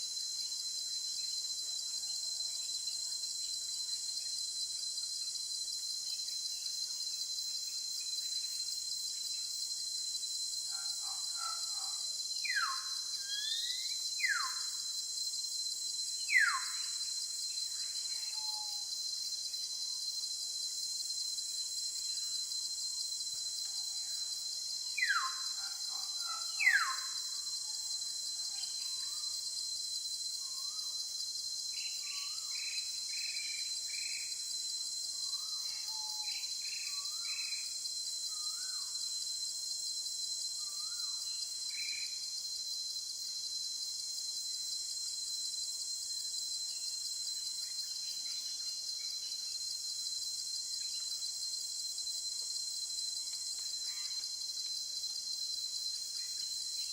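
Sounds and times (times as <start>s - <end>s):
insect chorus: 0.0s - 56.9s.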